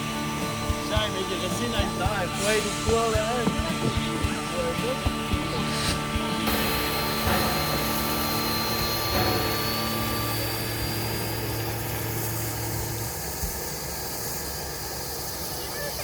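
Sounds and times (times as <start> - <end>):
low hum: 0.0 - 15.6
steam locomotive hissing steam: 0.0 - 16.0
faint high whine rising in pitch: 5.4 - 16.0.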